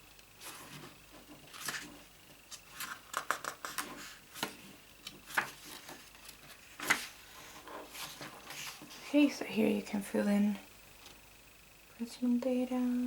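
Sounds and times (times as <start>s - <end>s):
paper pages rustling: 0.4s - 9.0s.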